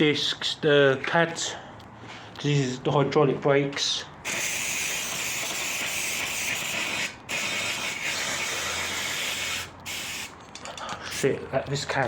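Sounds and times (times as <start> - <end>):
aerosol spray hissing: 4.3 - 10.3.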